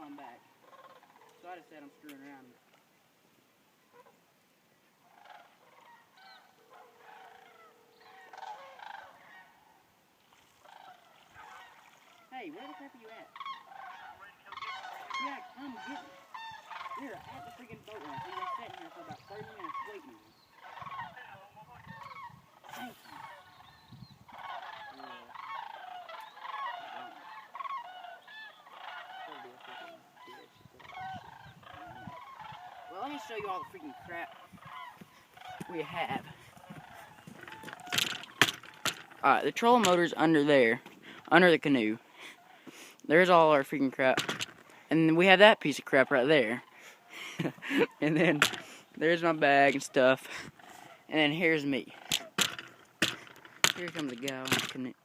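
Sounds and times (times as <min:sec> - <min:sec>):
geese honking: 0:00.0 - 0:02.6, 0:03.9 - 0:04.2, 0:05.0 - 0:55.0.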